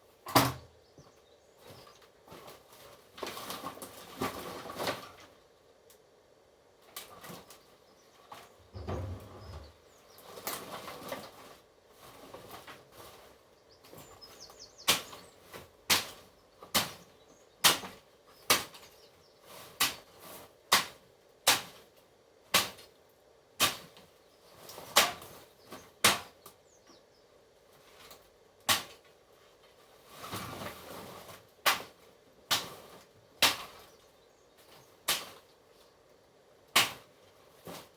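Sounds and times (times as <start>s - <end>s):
sharp knocks: 8.8s - 9.7s.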